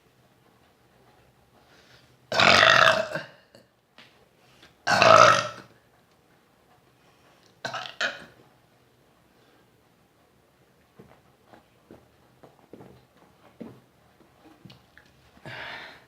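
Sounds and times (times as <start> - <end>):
person burping loudly: 2.3 - 3.6, 4.8 - 5.7, 7.7 - 8.3.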